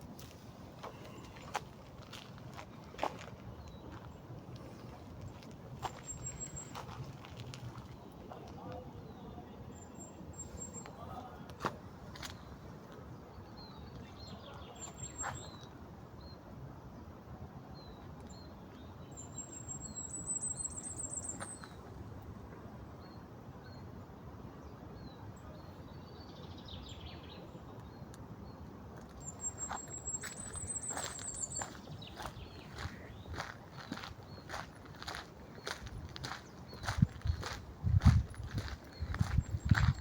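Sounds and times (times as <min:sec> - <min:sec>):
steady background noise: 0:00.0 - 0:17.6, 0:27.5 - 0:40.0
small birds chirping: 0:00.2 - 0:15.7, 0:25.0 - 0:40.0.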